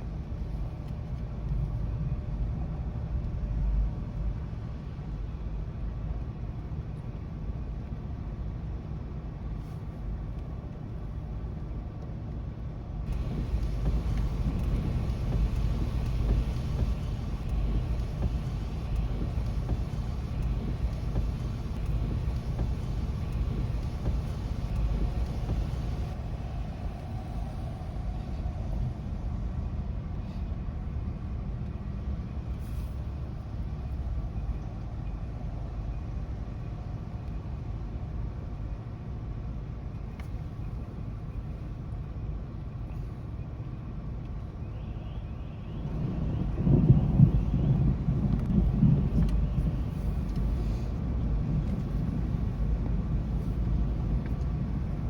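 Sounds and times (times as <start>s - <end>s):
rain hiss: 13.1s - 29.6s, 46.0s - 55.0s
low thunder rumble: 13.1s - 30.1s, 45.8s - 55.0s.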